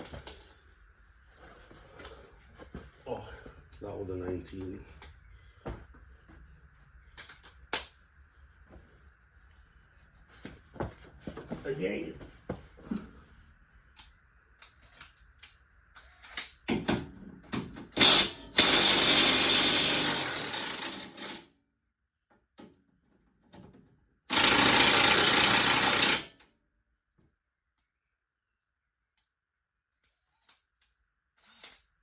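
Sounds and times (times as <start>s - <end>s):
impact wrench running: 17.9s - 21.4s, 24.3s - 26.3s.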